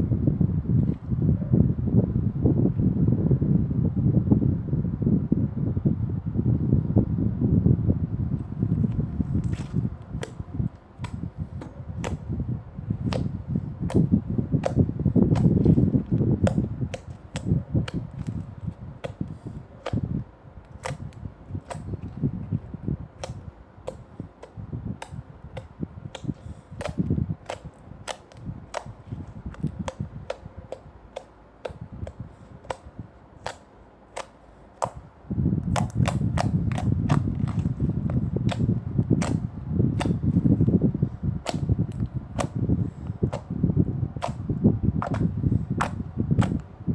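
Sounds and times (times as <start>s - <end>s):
low slime squelching: 9.0s - 46.8s
slime popping and clicking: 13.9s - 22.2s, 23.2s - 35.0s, 35.6s - 39.4s, 41.4s - 42.6s, 44.2s - 44.4s, 45.0s - 46.7s.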